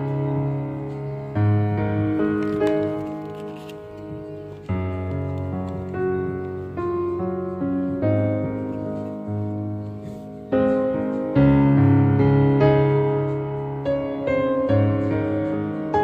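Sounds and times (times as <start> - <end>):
slow piano chords: 0.0 - 16.0.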